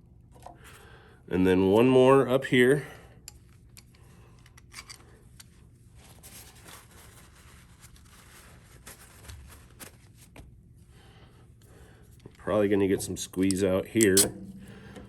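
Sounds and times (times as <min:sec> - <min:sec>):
clamp clicking and rubbing: 0:13.5 - 0:15.0.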